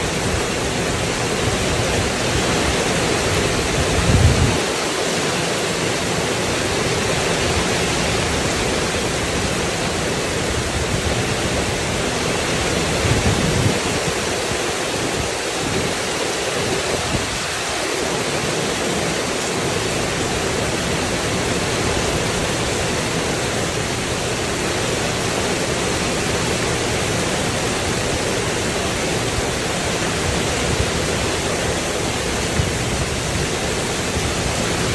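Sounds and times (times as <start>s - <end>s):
heavy rain on a tin roof: 0.0s - 34.9s
low rumbles: 3.2s - 4.8s.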